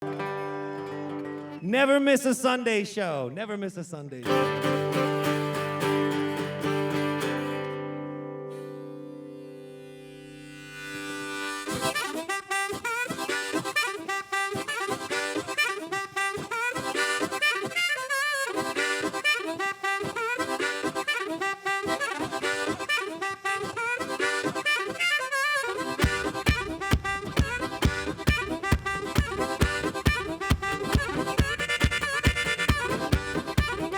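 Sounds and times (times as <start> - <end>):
harmonica riff: 0.0 - 2.0, 4.2 - 33.9
guitar chord ringing: 4.2 - 11.6.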